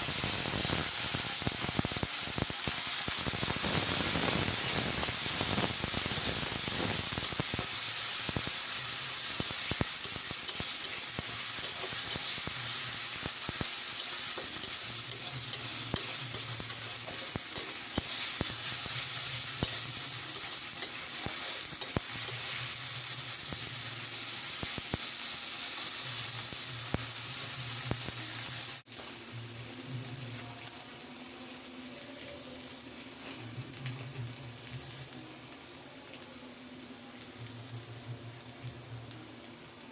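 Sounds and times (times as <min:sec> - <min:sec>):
food sizzling in a frying pan: 0:00.0 - 0:39.9
spoon scraping a pan: 0:10.0 - 0:12.6, 0:13.9 - 0:22.8.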